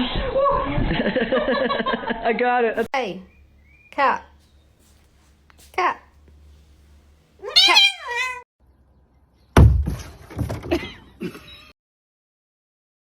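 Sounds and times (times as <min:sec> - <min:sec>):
cat meowing: 0:07.4 - 0:08.4
loud thump: 0:09.6 - 0:10.5.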